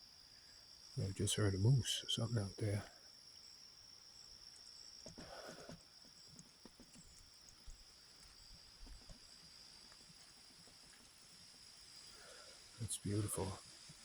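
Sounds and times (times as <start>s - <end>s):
crickets trilling: 0.0s - 14.0s
faint ticks: 4.4s - 12.6s.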